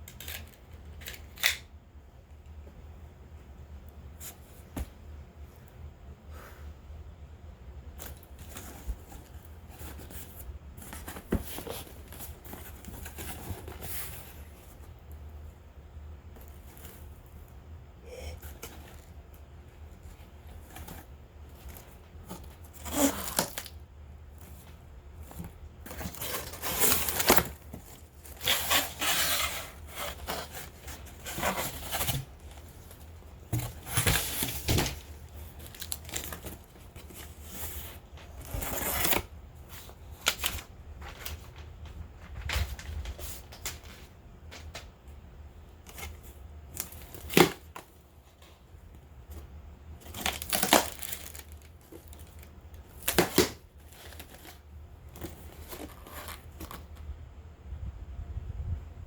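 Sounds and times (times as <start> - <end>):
packaging tearing and crinkling: 21.8 - 23.8, 25.3 - 32.9, 33.6 - 37.1, 50.0 - 56.8.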